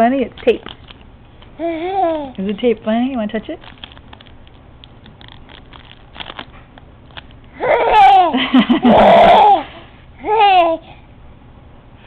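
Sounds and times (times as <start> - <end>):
infant laughing in squealing giggles: 7.6 - 10.8.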